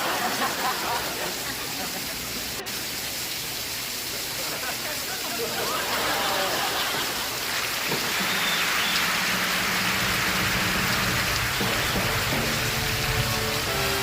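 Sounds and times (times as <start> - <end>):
steady rain falling: 0.0 - 14.0
television music: 7.9 - 14.0.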